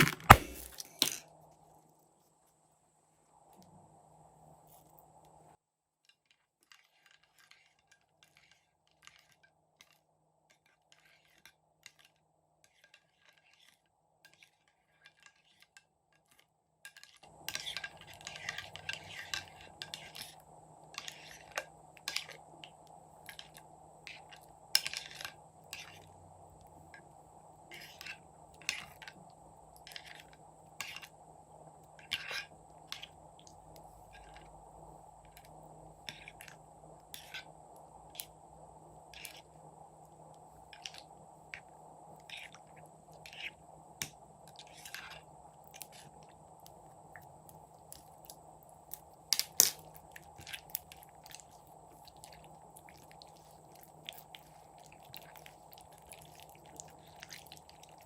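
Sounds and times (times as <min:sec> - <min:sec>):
tools and containers clicking: 0:00.0 - 0:01.3, 0:49.3 - 0:50.9
steady low hum: 0:17.3 - 0:58.0.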